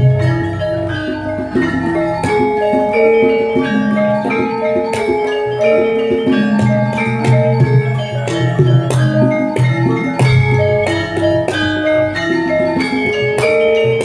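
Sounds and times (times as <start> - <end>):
metallophones ringing notes: 0.0 - 14.0.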